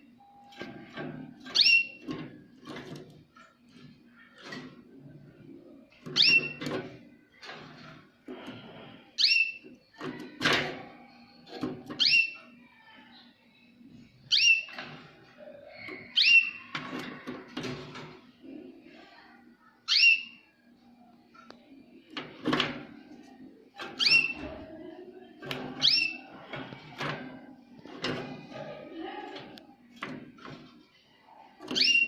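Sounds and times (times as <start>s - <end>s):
canary chirping: 0.4s - 3.0s, 6.0s - 6.9s, 9.1s - 17.2s, 19.9s - 20.5s, 23.8s - 28.4s, 31.6s - 32.0s.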